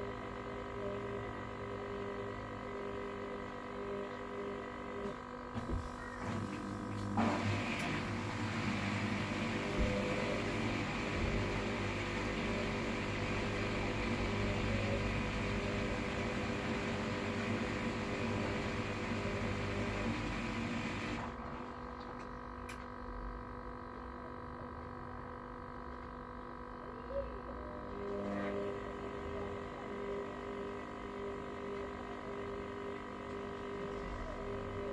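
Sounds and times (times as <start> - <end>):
steady hum: 0.0 - 34.9
washer-dryer rushing noise: 5.5 - 21.7.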